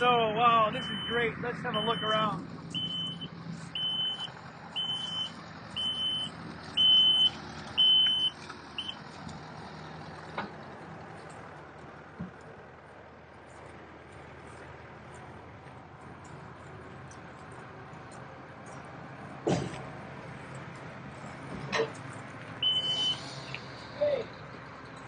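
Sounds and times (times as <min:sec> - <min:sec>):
engine hum: 0:00.0 - 0:25.0
backup alarm beeping: 0:00.7 - 0:09.0, 0:22.6 - 0:23.2.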